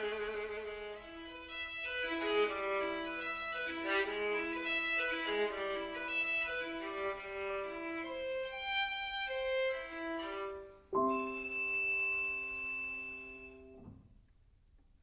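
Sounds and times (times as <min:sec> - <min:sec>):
slow instrumental melody: 0:10.7 - 0:13.8.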